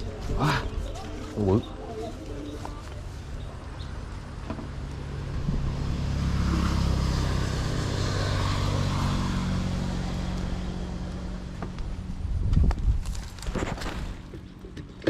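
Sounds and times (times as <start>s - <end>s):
small motor engine passing by: 3.0s - 12.2s.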